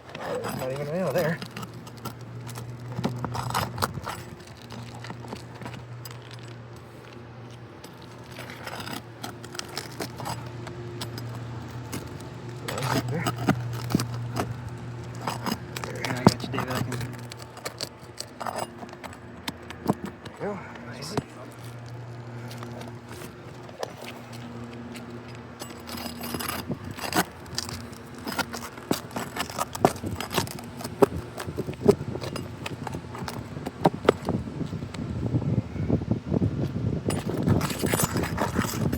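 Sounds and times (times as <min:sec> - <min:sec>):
pry bar clinking and scraping: 0:00.0 - 0:34.4, 0:37.1 - 0:38.9.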